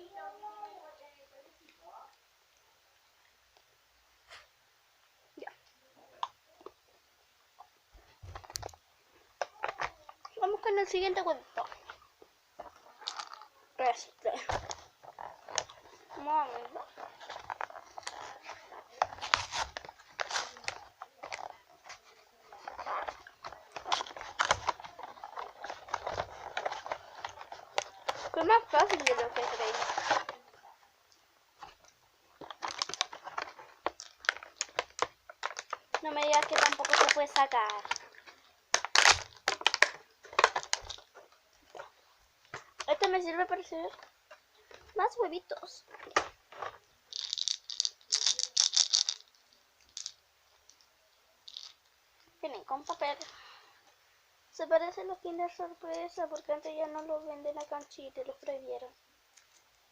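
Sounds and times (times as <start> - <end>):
chocolate egg wrapping crackling: 8.2 - 30.8, 31.6 - 53.6
pieces rattling in plastic capsule: 32.4 - 38.0, 47.1 - 50.2, 51.5 - 51.8.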